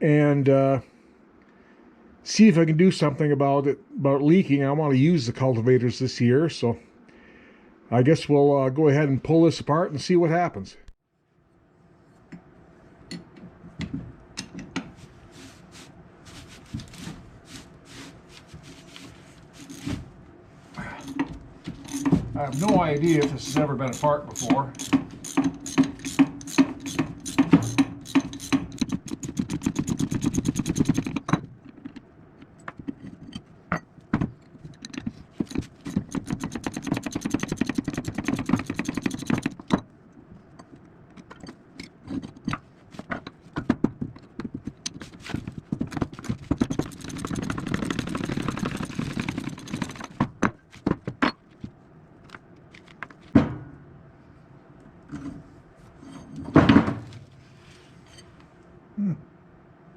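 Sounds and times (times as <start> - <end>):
metal tools clinking: 20.8 - 31.4
ratchet wrench clicking: 21.9 - 31.2, 35.5 - 39.6.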